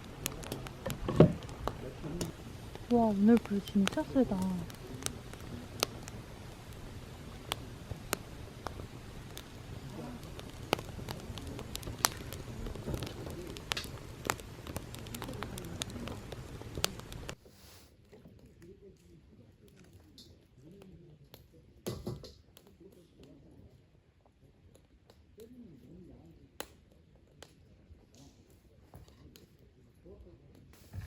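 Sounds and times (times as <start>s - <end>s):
faint distant voices: 0.0s - 17.4s
campfire crackling and popping: 0.0s - 29.8s.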